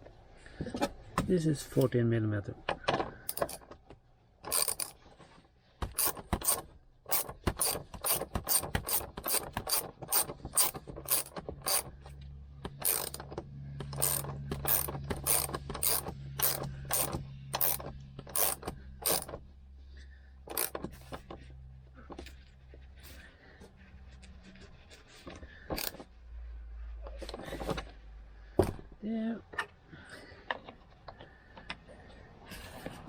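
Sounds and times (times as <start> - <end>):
ratchet wrench clicking: 3.3 - 3.6, 4.5 - 5.0, 5.8 - 12.0, 12.7 - 19.3, 20.5 - 20.8, 25.8 - 26.0.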